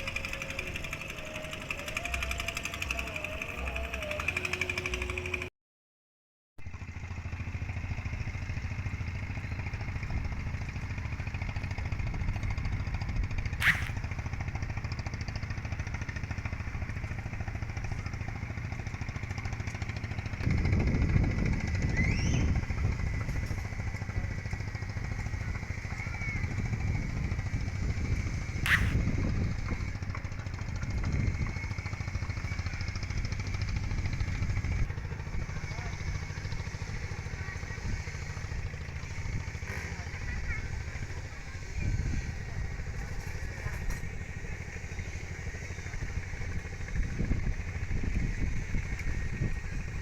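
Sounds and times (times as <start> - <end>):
engine running: 0.0 - 5.5, 6.7 - 50.0
sharp clicks: 13.6 - 14.0.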